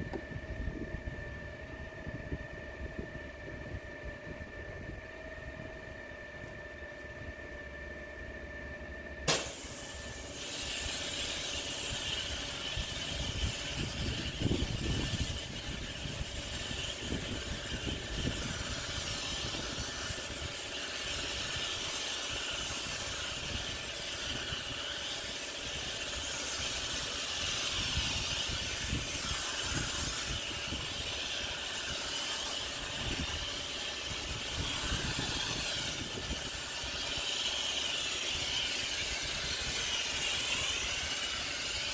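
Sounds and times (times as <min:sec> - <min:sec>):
pressure washer machine running: 0:09.2 - 0:41.9
sharp click: 0:09.3 - 0:09.6
hiss of spray: 0:09.3 - 0:41.9.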